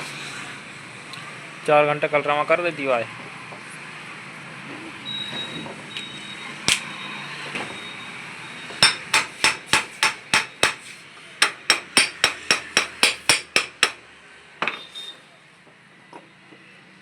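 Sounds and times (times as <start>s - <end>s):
hammer striking metal: 8.8s - 14.0s.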